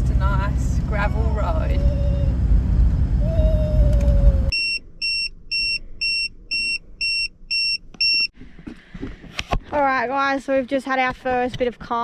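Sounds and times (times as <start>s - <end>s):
road noise on gravel: 0.0s - 4.5s
high-pitched alarm beeps: 4.5s - 8.3s.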